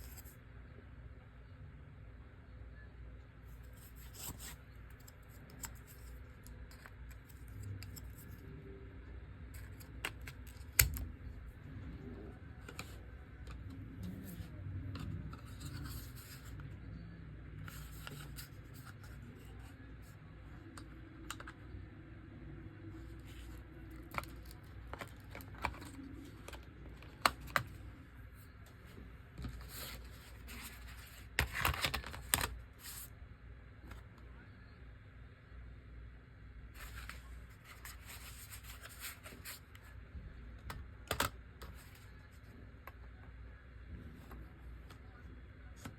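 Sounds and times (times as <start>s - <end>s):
clicks of laptop parts: 40.6s - 41.4s.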